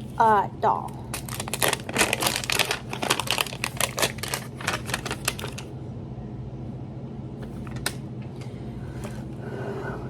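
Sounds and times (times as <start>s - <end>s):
plastic packaging crackling: 0.0s - 5.7s.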